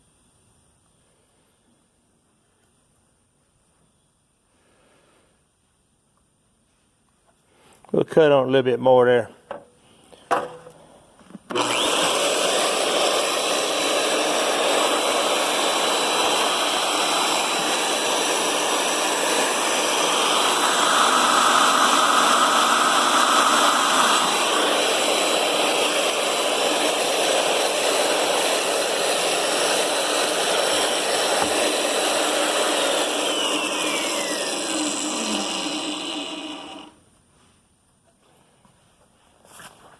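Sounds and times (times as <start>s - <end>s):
electric drill motor whining: 11.5s - 37.0s
end mill grinding metal: 11.5s - 37.0s.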